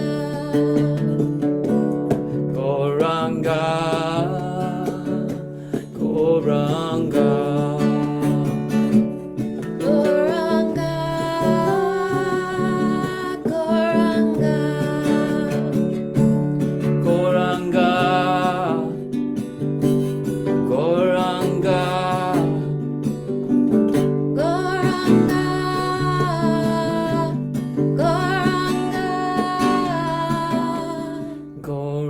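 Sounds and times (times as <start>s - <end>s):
guitar: 0.0s - 32.0s
person singing a chant: 9.8s - 15.9s.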